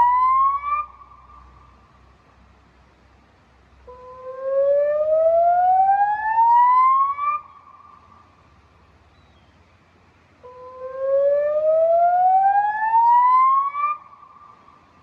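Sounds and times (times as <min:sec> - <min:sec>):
electronic warning siren whoop: 0:10.7 - 0:14.0.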